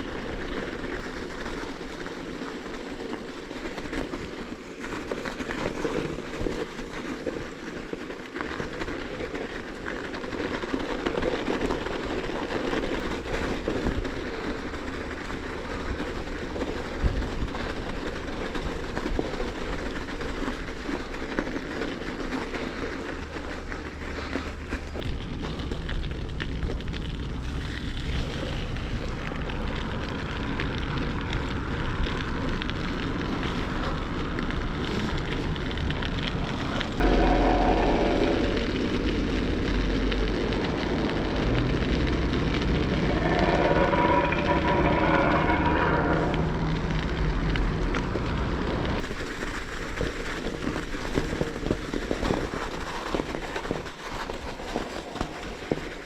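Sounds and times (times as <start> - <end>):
bicycle tyres crunching on snow: 0.0 - 56.0
deep low rumble: 35.6 - 49.1.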